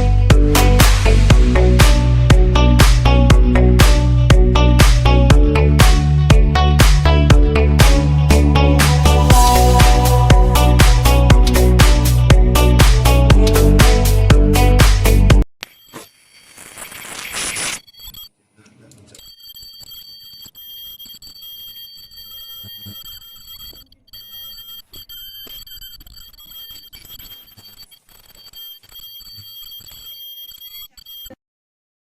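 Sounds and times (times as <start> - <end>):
high-pitched ultrasonic welder whine: 15.6 - 18.2.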